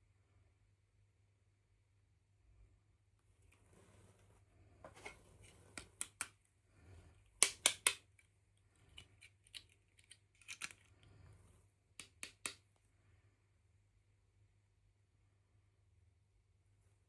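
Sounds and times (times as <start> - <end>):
small plastic clicks and snips: 5.8 - 6.4, 7.4 - 11.1, 12.0 - 12.7.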